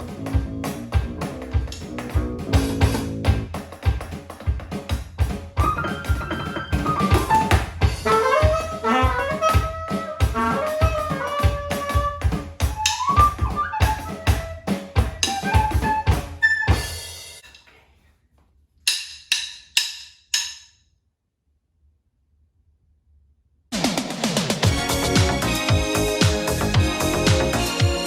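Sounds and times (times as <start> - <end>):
instrumental melody with drum beat: 0.0 - 17.4, 23.8 - 28.0.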